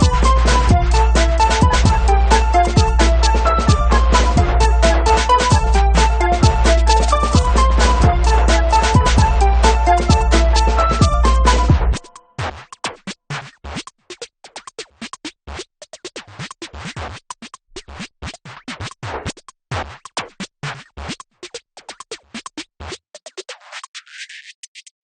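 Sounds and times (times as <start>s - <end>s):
filter sweep: 0.0s - 12.1s
electronic music with bass: 0.0s - 12.2s
glitchy clicking percussion: 0.0s - 12.9s.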